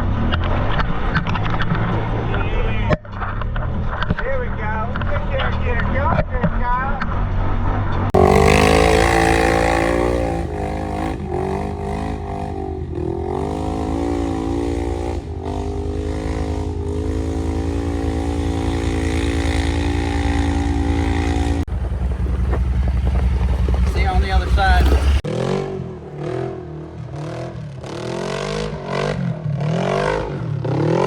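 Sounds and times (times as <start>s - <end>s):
off-road vehicle engine revving: 7.8s - 31.0s.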